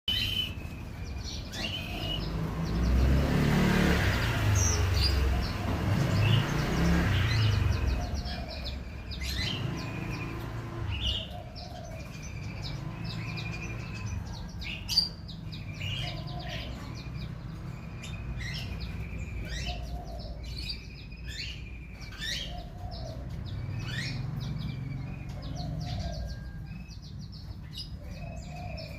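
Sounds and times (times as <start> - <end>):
small songbirds chirping: 0.0 - 28.9.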